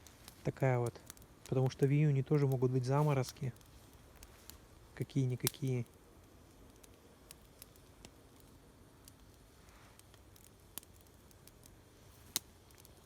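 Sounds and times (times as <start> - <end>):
campfire crackling: 0.0 - 13.0
sharp pops of fire: 0.0 - 13.0.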